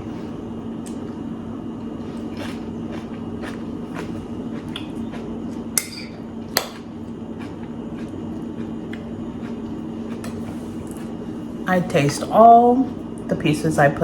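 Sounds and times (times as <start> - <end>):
room hum: 0.0 - 14.0
utensil clinking against dish: 5.8 - 6.8.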